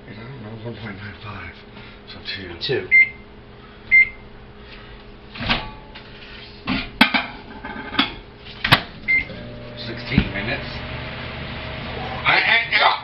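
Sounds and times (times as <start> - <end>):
microwave keypad beep: 2.9 - 3.2, 3.9 - 4.2
kitchen knocks and clatters: 5.4 - 5.8, 6.7 - 9.0.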